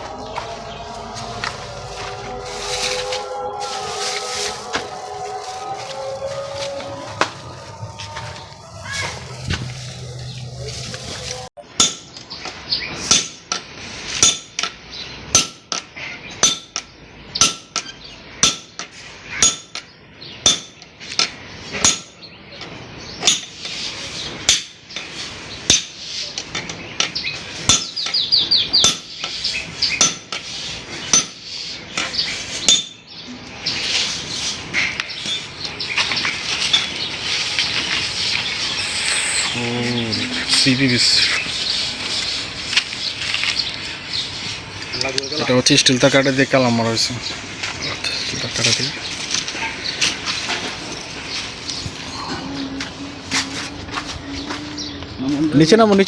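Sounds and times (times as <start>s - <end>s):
rough scraping noise: 0.0s - 11.5s, 33.7s - 44.8s.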